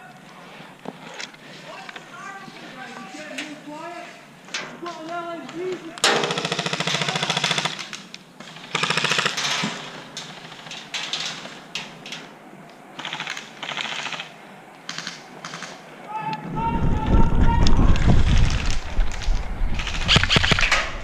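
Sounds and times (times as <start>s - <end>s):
airsoft rifle full-auto bursts: 6.2s - 9.4s, 13.0s - 14.3s, 14.9s - 15.8s.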